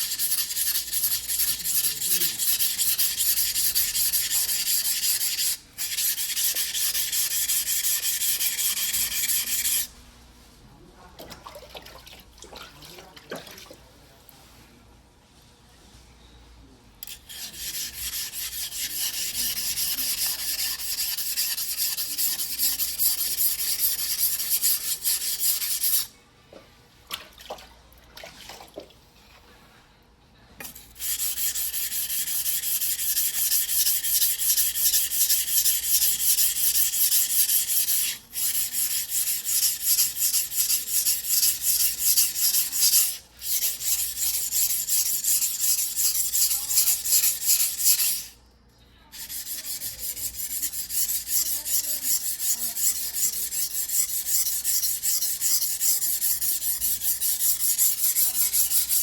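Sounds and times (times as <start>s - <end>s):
blade rasping on whetstone: 0.0s - 9.9s, 17.0s - 26.1s, 30.7s - 48.3s, 49.2s - 59.0s.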